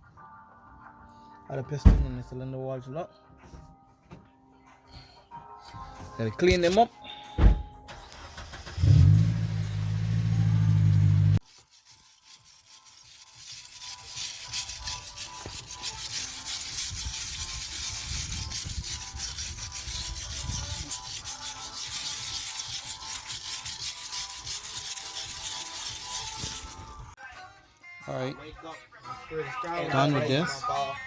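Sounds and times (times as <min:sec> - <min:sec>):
abrasive scrubbing on metal: 0:11.4 - 0:27.1.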